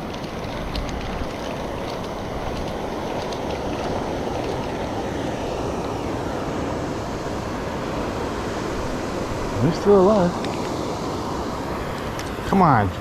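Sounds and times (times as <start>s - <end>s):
waterfall rushing: 0.0s - 12.9s.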